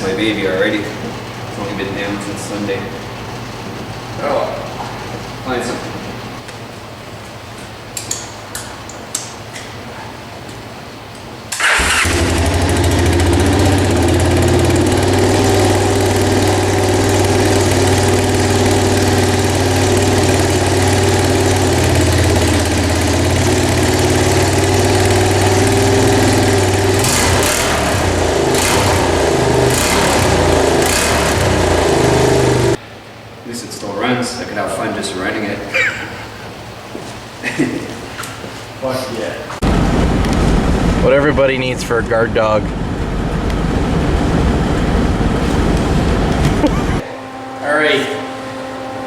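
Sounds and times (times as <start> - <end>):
engine starting idling and revving: 11.5 - 32.8, 39.6 - 47.0.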